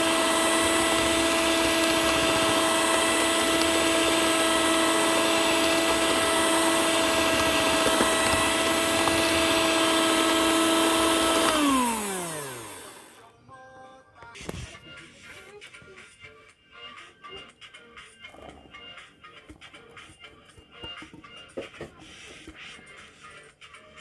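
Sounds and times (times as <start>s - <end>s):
mixer grinder running: 0.0s - 13.2s
motor winding down: 0.0s - 13.2s.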